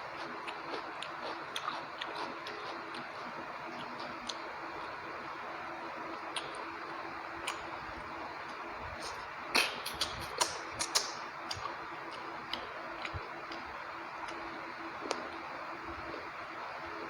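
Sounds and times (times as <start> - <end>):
chewing mouth clicks and smacks: 0.1 - 5.0, 6.2 - 6.7, 7.4 - 7.8, 8.4 - 15.3.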